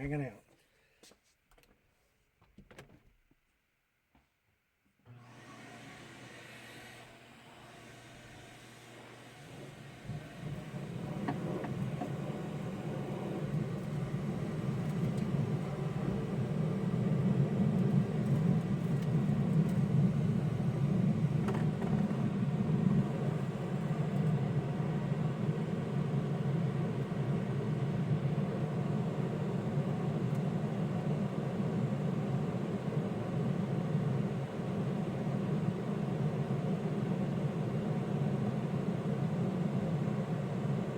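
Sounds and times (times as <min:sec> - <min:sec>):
air blower rushing: 0:05.2 - 0:32.6.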